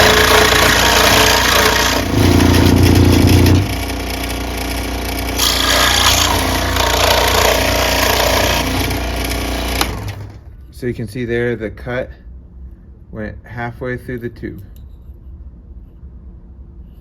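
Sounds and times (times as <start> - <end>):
scroll saw cutting bamboo: 0.0 - 10.4.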